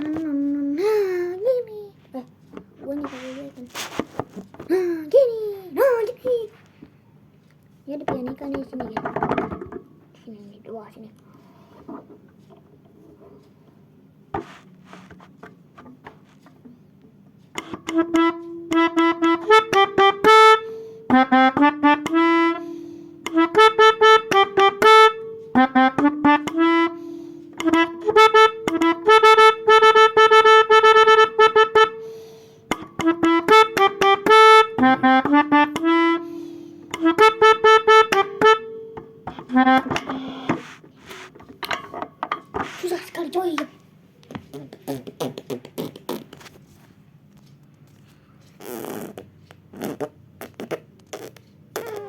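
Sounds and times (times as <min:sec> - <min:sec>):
melodica playing short phrases: 0:02.8 - 0:03.8, 0:17.6 - 0:41.3.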